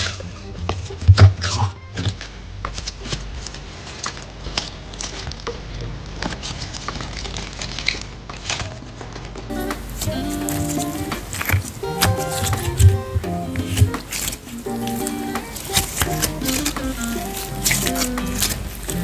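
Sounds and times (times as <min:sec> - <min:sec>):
slime clicking and crackling: 0:09.5 - 0:19.0
slime squelches: 0:09.5 - 0:19.0.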